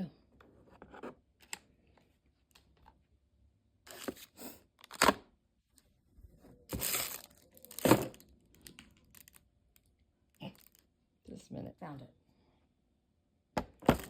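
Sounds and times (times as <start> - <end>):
rustling and scraping of objects: 3.9 - 4.6, 5.7 - 9.4.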